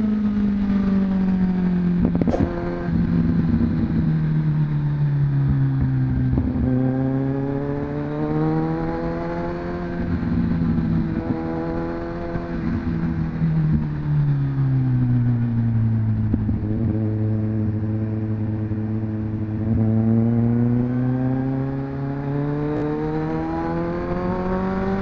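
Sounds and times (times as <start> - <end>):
motorcycle engine accelerating: 0.0 - 25.0.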